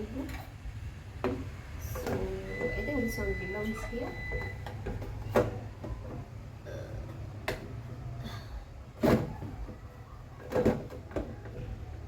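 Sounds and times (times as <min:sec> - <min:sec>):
plastic fridge shelves knocking: 0:09.0 - 0:12.0.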